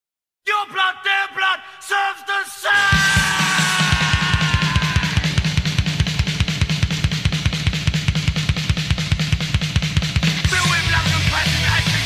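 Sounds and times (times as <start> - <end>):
fast heavy rock music: 2.7 - 12.0
rapid bass drum beat: 2.9 - 12.0.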